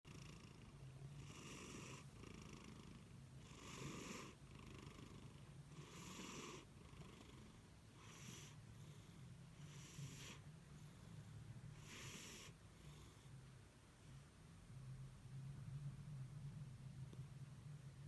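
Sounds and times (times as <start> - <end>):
cat snoring softly: 0.1 - 13.5.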